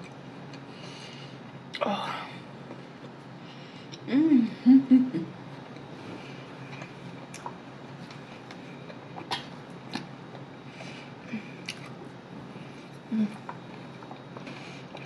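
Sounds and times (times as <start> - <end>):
woman humming: 4.1 - 5.3, 13.1 - 13.5.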